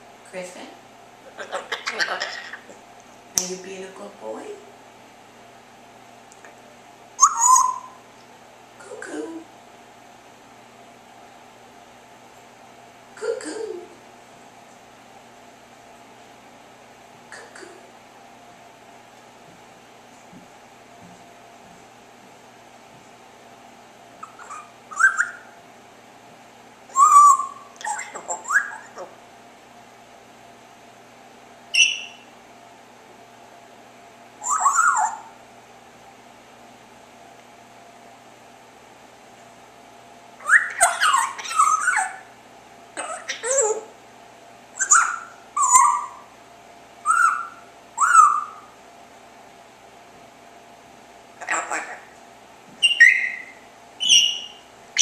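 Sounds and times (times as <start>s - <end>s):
parrot chirping and whistling: 1.3s - 2.7s, 7.2s - 8.0s, 24.2s - 25.6s, 26.9s - 29.0s, 31.7s - 32.3s, 34.4s - 35.3s, 40.4s - 42.3s, 44.8s - 46.3s, 47.0s - 48.7s, 52.8s - 55.0s.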